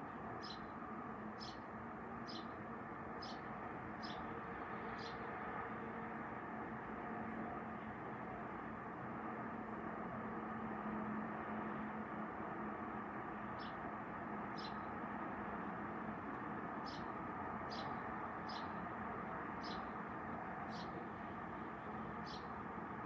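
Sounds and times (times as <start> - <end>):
outdoor background hum: 0.0 - 23.0
small bird chirping: 17.7 - 18.7.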